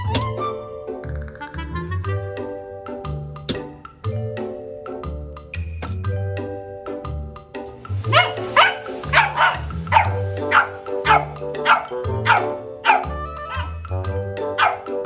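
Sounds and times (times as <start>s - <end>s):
background music: 0.0s - 15.0s
dog barking: 8.0s - 13.7s, 14.6s - 14.9s.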